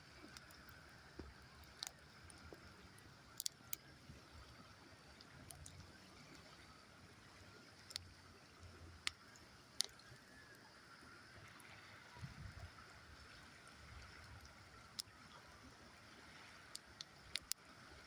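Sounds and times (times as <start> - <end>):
campfire crackling and popping: 0.0 - 10.7, 14.2 - 15.3, 16.6 - 17.7
flowing river water: 0.0 - 18.0.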